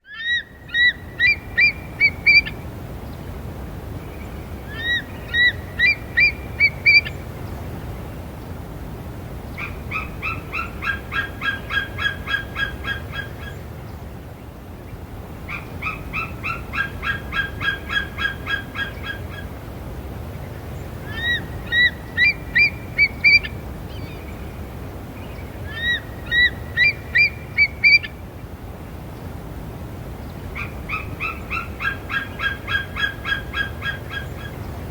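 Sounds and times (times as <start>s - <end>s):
eagle piping chirps: 4.7s - 7.2s, 21.1s - 24.2s, 25.7s - 28.1s.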